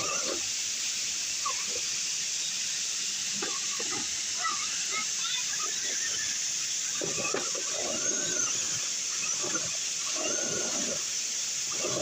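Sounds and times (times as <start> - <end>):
water rushing: 0.0 - 12.0
electric motor whining: 4.8 - 12.0.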